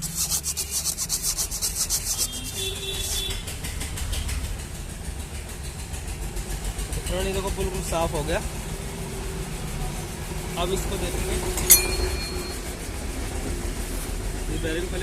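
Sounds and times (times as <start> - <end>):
sandpaper rasping on metal shaft: 0.0 - 3.4.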